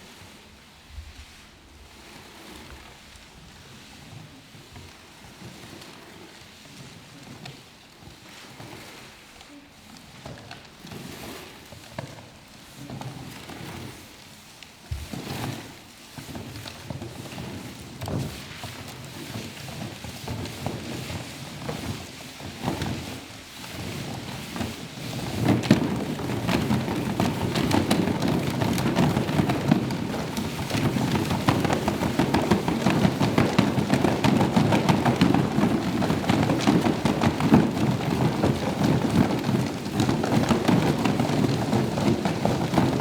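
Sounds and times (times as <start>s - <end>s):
crackling rain-like noise: 21.7s - 43.0s.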